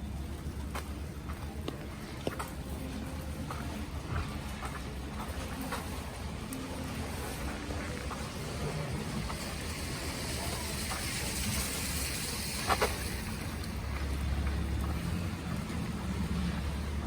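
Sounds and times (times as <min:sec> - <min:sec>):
vehicle engine rumble: 0:00.0 - 0:17.0
tyre hiss on wet road: 0:08.2 - 0:15.6.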